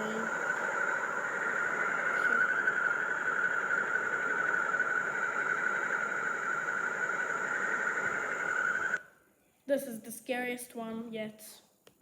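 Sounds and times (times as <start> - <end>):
wavering high tone: 0.0 - 9.1
constant hiss: 0.0 - 12.0.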